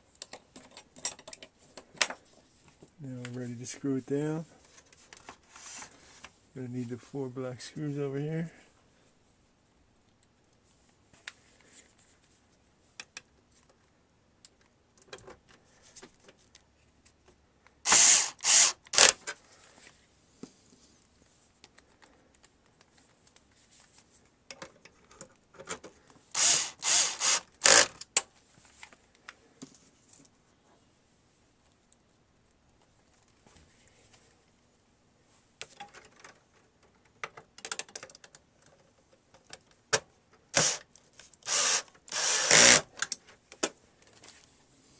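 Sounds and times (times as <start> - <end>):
light clicks and handling noise: 0.0 - 6.4, 19.2 - 26.2, 31.6 - 34.7, 35.3 - 41.4
screwdriver grinding bursts: 17.8 - 19.2, 26.4 - 28.0, 40.6 - 40.8, 41.4 - 42.9.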